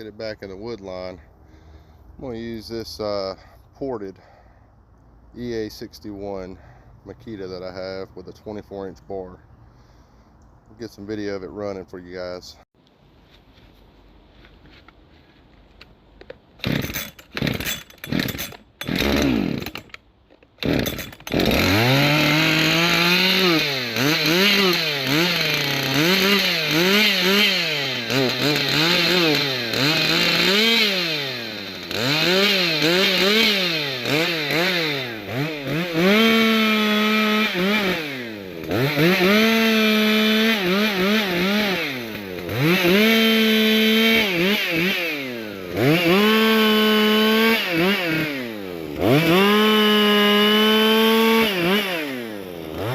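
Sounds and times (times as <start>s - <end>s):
chainsaw sputtering and revving: 16.6s - 20.0s, 20.6s - 52.9s.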